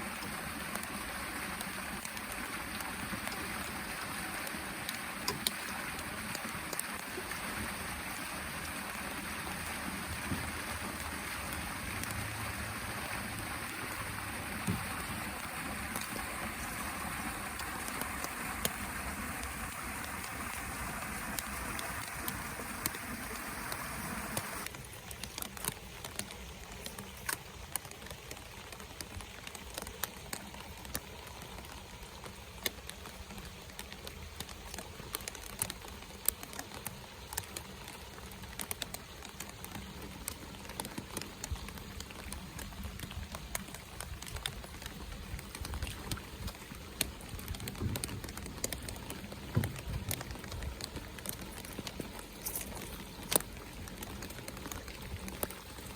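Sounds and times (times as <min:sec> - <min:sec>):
loud hiss: 0:00.0 - 0:24.7
raindrop ticks: 0:00.0 - 0:55.9
steady rain: 0:00.0 - 0:55.9.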